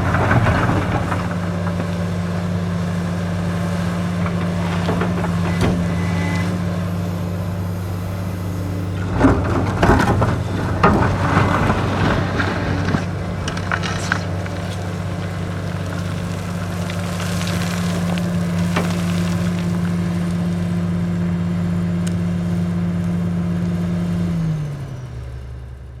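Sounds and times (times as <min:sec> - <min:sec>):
excavator diesel engine running: 0:00.0 - 0:26.0.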